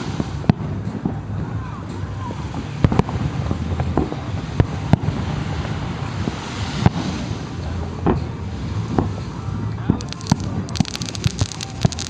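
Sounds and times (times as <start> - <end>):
fireworks bangs: 10.0 - 12.0
low background rumble: 10.0 - 12.0.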